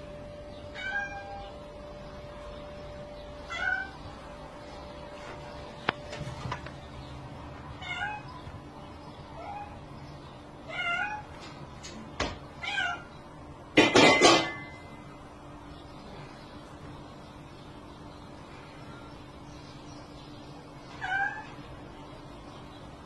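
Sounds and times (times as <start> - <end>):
cat meowing: 0.7 - 1.5, 3.5 - 4.0, 7.8 - 8.3, 10.7 - 11.3, 21.0 - 21.6.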